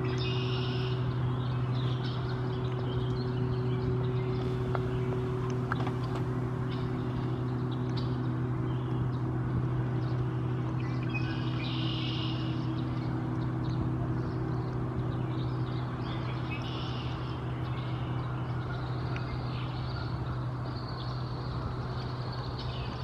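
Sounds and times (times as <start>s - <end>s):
bird calls: 0.0s - 9.1s
faint steady tones: 0.0s - 23.0s
low mechanical hum: 0.0s - 23.0s.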